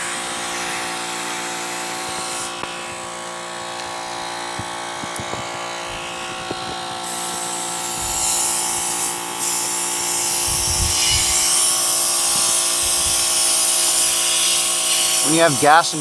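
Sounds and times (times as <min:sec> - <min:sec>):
compressed air hissing from nozzle: 0:00.0 - 0:02.6, 0:07.0 - 0:16.0
steady motor hum: 0:00.0 - 0:16.0.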